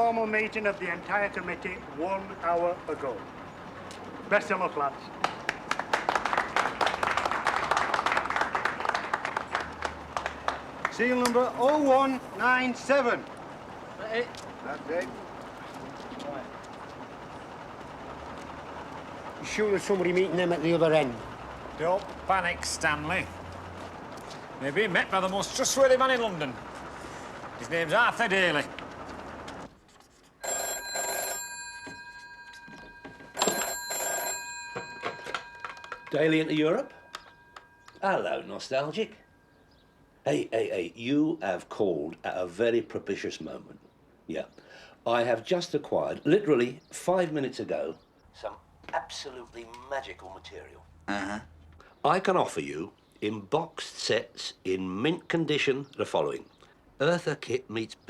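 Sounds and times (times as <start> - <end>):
people clapping: 5.2 - 12.0
telephone bell ringing: 30.4 - 39.7.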